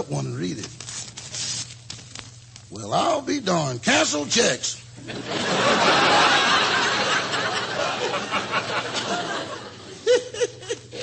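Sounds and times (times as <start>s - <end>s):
studio audience laughing: 5.0s - 11.0s.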